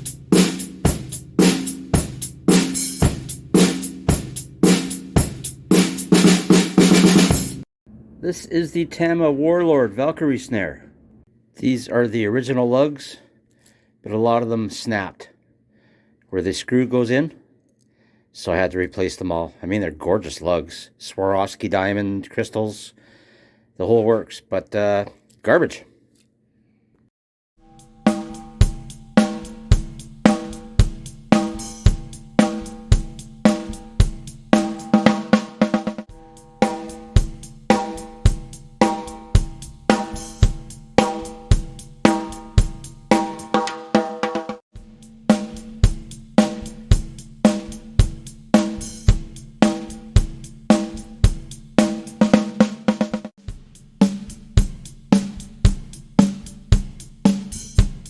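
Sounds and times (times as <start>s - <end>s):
hi-hat and cymbals: 0.0s - 7.6s, 27.6s - 58.0s
snare drum hits ringing: 27.8s - 44.6s
kick drum: 53.5s - 53.8s.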